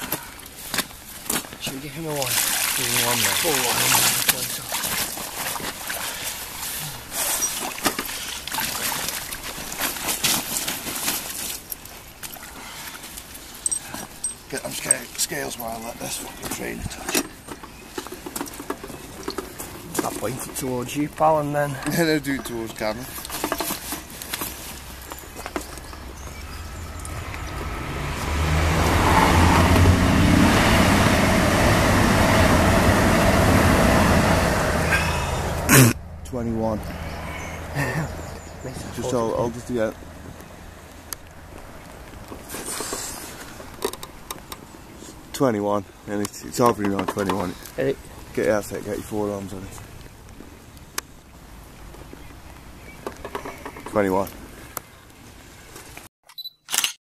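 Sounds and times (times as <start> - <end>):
water splashing and trickling: 0.0 - 31.0
vehicle passing by: 26.0 - 42.0.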